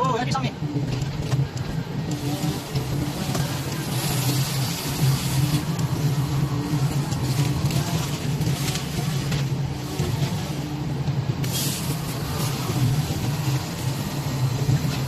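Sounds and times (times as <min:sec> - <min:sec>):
diesel engine running: 0:00.6 - 0:15.0
hissing bursts: 0:01.9 - 0:15.0.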